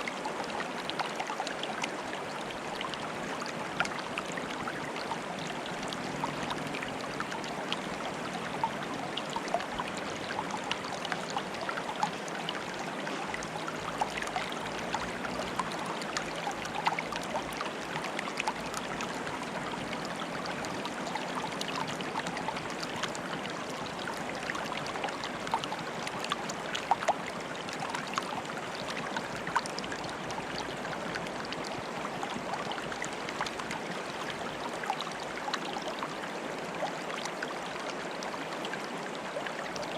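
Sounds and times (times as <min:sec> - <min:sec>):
water bubbling and trickling: 0:00.0 - 0:39.9.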